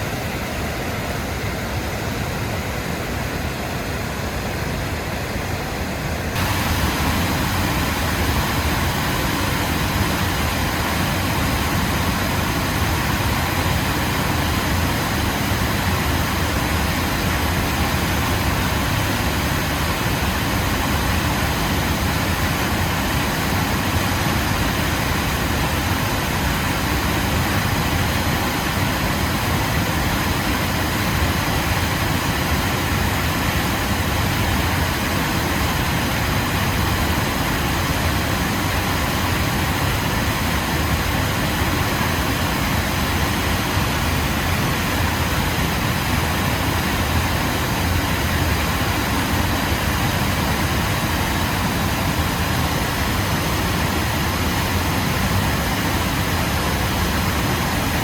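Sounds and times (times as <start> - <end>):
waterfall roaring: 0.0 - 58.0.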